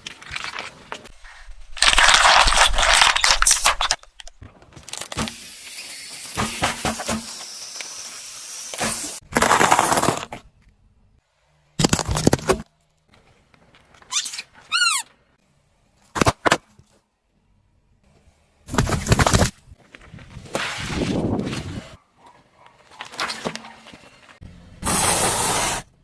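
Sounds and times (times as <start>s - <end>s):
objects crushed under car tyre: 9.2s - 10.4s, 11.8s - 12.7s
high falling squeaks: 14.0s - 15.2s.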